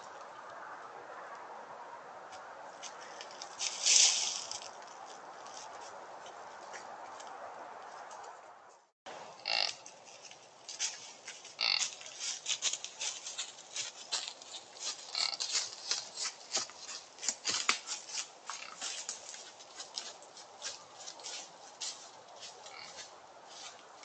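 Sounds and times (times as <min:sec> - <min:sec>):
footsteps crunching dry leaves: 0:02.8 - 0:06.9, 0:09.8 - 0:24.0.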